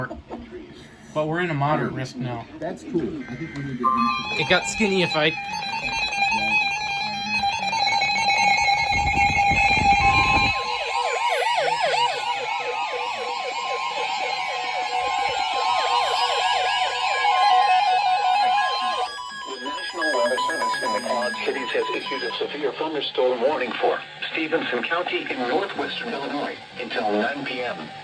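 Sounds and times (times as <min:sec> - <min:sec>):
warning alarm tone: 0:03.3 - 0:22.5
warbling siren-style alarm: 0:03.4 - 0:22.6
high alert tones: 0:03.8 - 0:05.6, 0:18.9 - 0:22.4.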